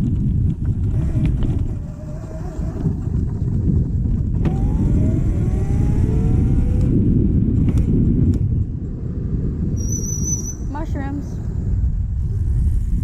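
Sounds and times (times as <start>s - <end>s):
road rumble: 0.0s - 13.0s
wind noise: 0.0s - 13.0s
scooter motor accelerating: 0.6s - 9.0s.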